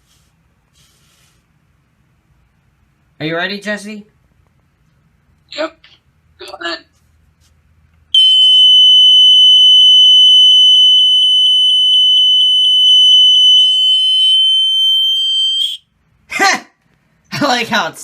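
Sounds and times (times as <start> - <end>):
smoke alarm high-pitched tone: 8.2 - 15.9.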